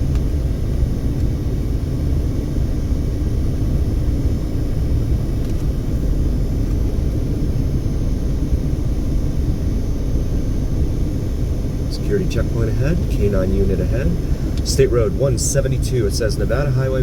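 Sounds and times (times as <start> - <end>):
car road rumble from inside: 11.9 - 17.0.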